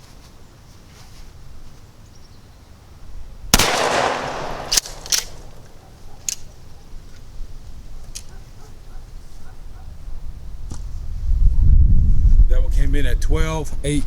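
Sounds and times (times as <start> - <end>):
shotgun shot: 3.6 - 5.8
sharp clicks: 3.6 - 6.4.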